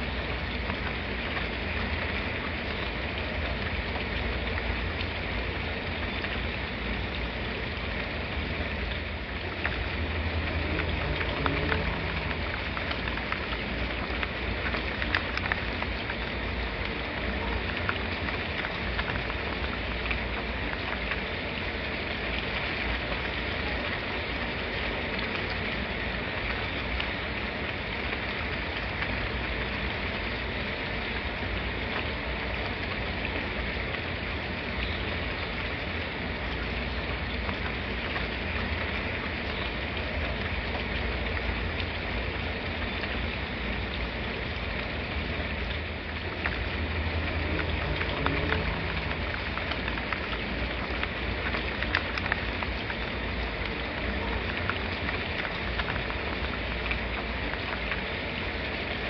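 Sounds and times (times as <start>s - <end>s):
steady rain falling: 0.0s - 59.0s
low rumble: 45.0s - 51.4s.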